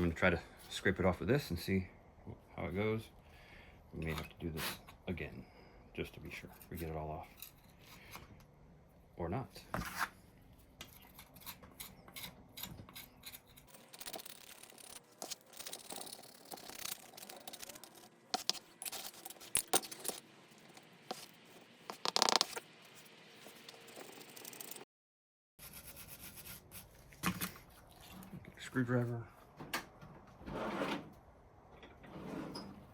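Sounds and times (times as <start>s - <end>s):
scraper scraping paint off metal: 13.0s - 24.8s.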